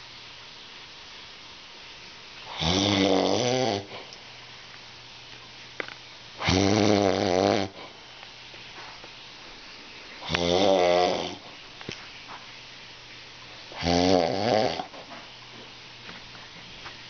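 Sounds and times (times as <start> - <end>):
loud snoring: 2.5 - 4.0, 6.4 - 7.8, 10.2 - 11.4, 13.8 - 14.9.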